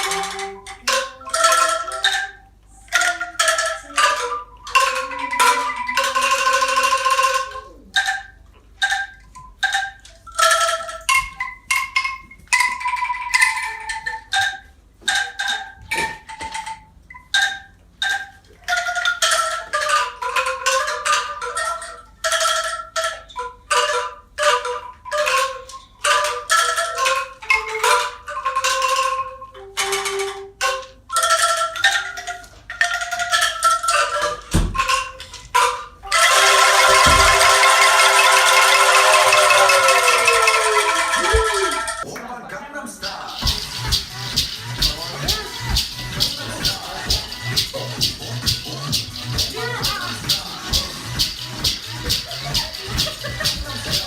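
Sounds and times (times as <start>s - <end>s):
xylophone melody: 0.0s - 22.8s, 24.0s - 42.1s, 43.0s - 54.0s.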